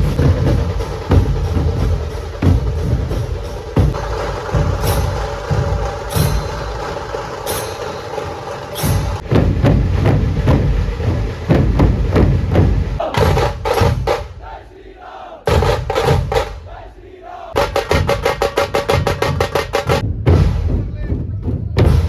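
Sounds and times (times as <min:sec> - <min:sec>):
drum troupe drumming: 0:00.0 - 0:22.0
crowd shouting: 0:12.8 - 0:17.8.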